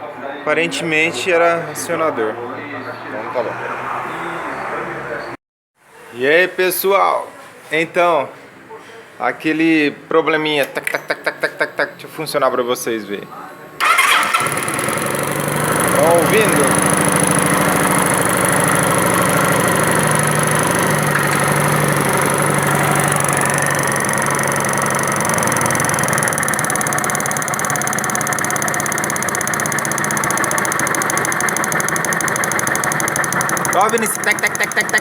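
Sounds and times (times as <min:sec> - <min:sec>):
motorcycle engine idling: 0:13.8 - 0:35.0
rapid knocking: 0:14.8 - 0:35.0.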